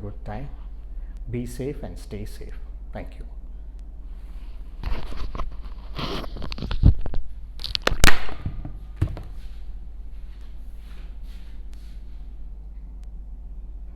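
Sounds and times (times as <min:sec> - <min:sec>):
low steady hum: 0:00.0 - 0:13.9.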